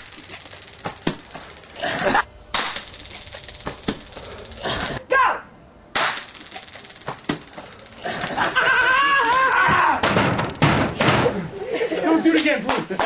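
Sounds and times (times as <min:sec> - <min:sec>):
taser crackling: 0:00.0 - 0:05.0, 0:05.9 - 0:11.6
person yelling: 0:05.1 - 0:05.5.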